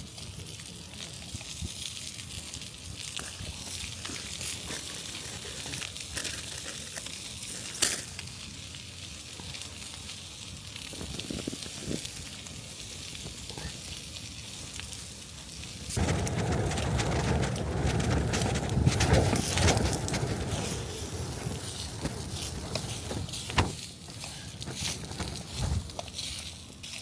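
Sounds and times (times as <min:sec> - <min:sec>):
sausages sizzling in pan: 0:00.0 - 0:16.0, 0:20.6 - 0:27.0
low rushing noise: 0:16.0 - 0:23.8.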